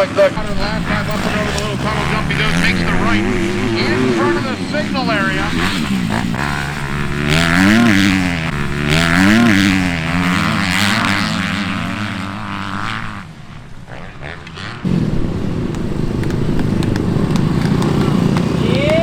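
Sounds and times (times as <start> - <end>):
motocross bike engine revving: 0.0 - 19.0
steady background noise: 0.0 - 19.0.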